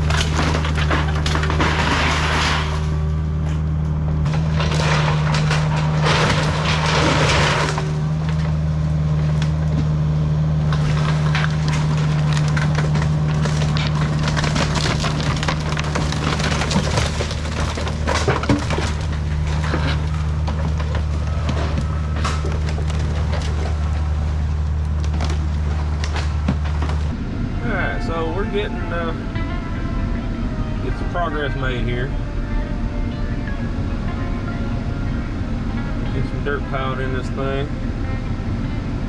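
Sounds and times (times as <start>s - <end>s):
wood debris crunching and splintering: 0.0s - 29.2s
diesel engine running: 0.0s - 39.0s.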